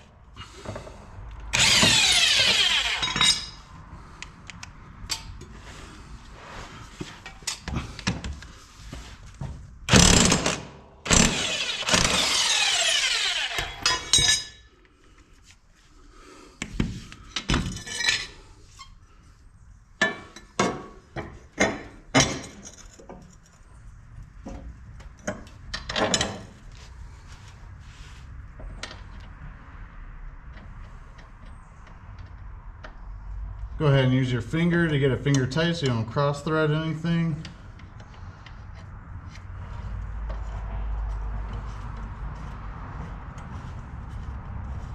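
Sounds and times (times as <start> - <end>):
impact wrench running: 1.5 - 3.6, 9.9 - 14.2.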